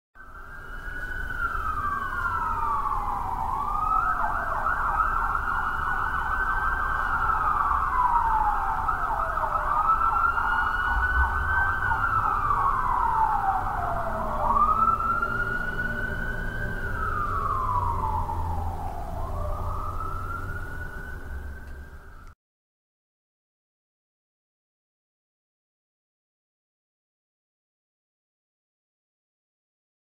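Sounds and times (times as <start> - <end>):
siren yelping warble: 0.2 - 22.2
city traffic rumble: 0.2 - 22.4
siren wailing: 0.2 - 22.4.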